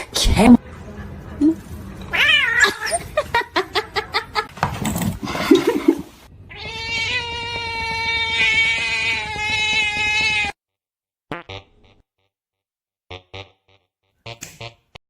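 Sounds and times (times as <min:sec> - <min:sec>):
cat meowing and yowling: 0:02.1 - 0:03.1, 0:06.5 - 0:10.6.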